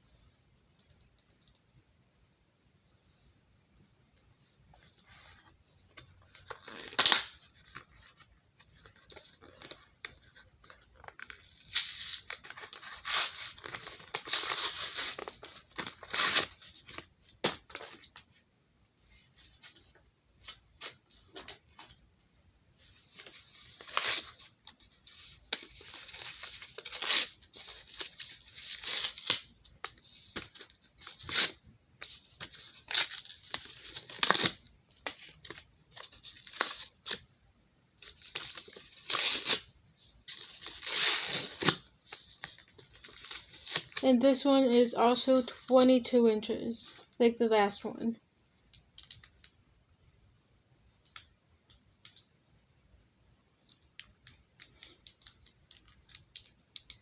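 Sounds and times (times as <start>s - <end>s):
packaging torn and crinkled: 32.4s - 37.2s, 38.0s - 39.7s, 40.3s - 44.0s.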